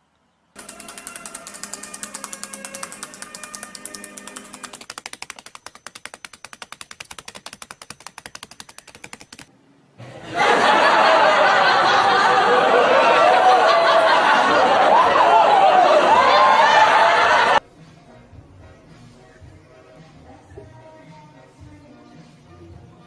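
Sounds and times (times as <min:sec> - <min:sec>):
rapid even clicks: 0:00.6 - 0:09.5
people laughing: 0:10.0 - 0:17.6.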